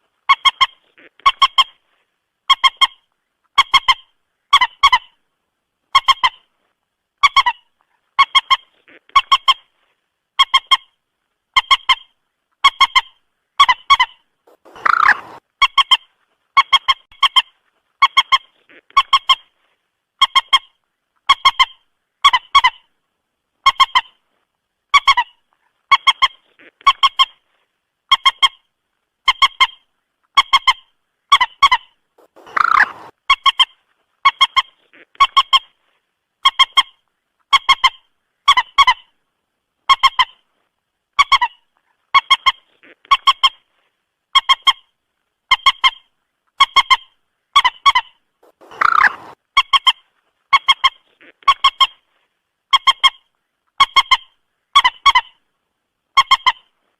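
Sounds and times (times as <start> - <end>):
moorhen clucking calls: 11.6 - 19.5, 29.3 - 35.8, 46.6 - 52.0.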